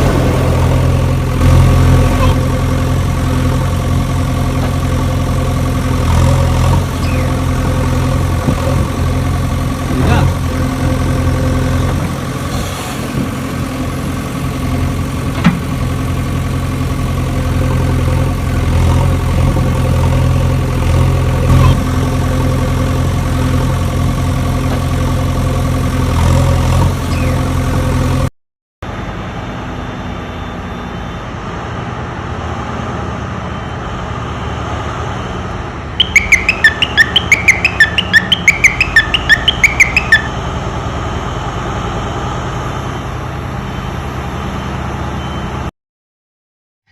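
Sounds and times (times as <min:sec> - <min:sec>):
low engine-like drone: 0:00.0 - 0:15.3, 0:28.9 - 0:45.1
fast high chirps: 0:07.0 - 0:07.4, 0:36.0 - 0:40.4.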